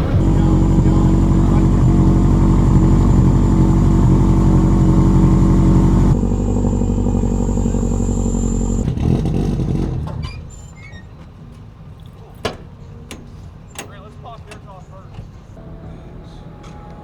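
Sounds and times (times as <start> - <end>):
car engine rumbling: 0.0 - 10.5.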